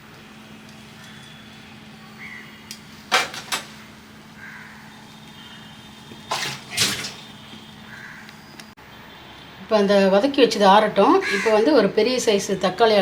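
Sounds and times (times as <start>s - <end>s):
kitchen clattering and rustling: 3.1s - 3.8s, 6.2s - 7.4s.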